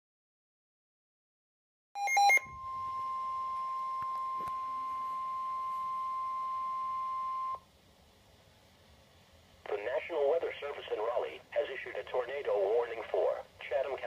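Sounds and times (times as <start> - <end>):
steady warning alarm tone: 2.0 - 7.6
weather radio beeps: 2.0 - 7.6
faint radio hiss: 2.5 - 14.0.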